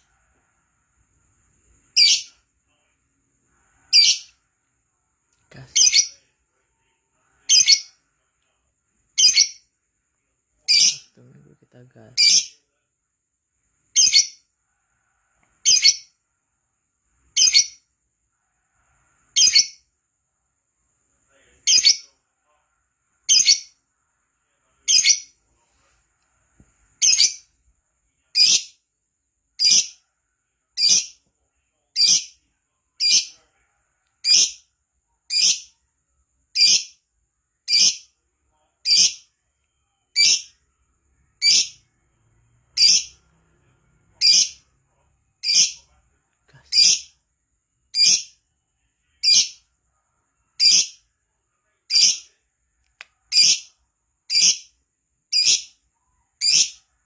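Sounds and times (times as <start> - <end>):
lovebird high-pitched calls: 2.0 - 2.3, 4.0 - 4.3, 5.7 - 6.1, 7.5 - 8.0, 9.2 - 9.6, 10.7 - 11.1, 12.2 - 12.5, 14.0 - 14.4, 15.6 - 16.1, 17.4 - 17.8, 19.4 - 19.8, 21.7 - 22.0, 23.3 - 23.8, 24.9 - 25.3, 27.0 - 27.5, 28.4 - 28.8, 29.6 - 30.0, 30.8 - 31.2, 32.0 - 32.4, 33.0 - 33.4, 34.2 - 34.6, 35.3 - 35.7, 36.6 - 37.0, 37.7 - 38.1, 38.9 - 39.3, 40.2 - 40.6, 41.4 - 41.8, 42.8 - 43.2, 44.2 - 44.6, 45.4 - 45.8, 46.7 - 47.1, 48.0 - 48.4, 49.2 - 49.6, 50.6 - 51.0, 51.9 - 52.3, 53.3 - 53.7, 54.3 - 54.7, 55.3 - 55.8, 56.4 - 56.8.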